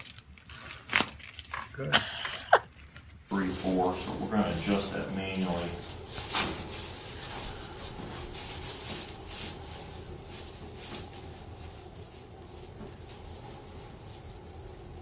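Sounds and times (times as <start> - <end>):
low steady hum: 0.0 - 15.0
clothing rustling on table: 3.3 - 14.5.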